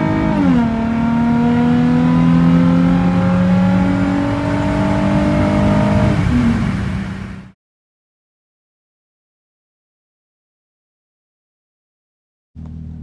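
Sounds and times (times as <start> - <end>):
car engine accelerating: 0.0 - 7.5
road and wind noise: 0.0 - 7.5.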